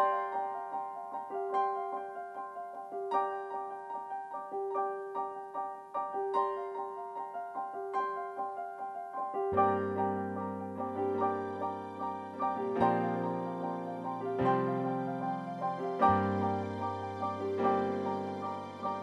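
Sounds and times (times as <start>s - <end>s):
piano music: 0.0s - 19.0s.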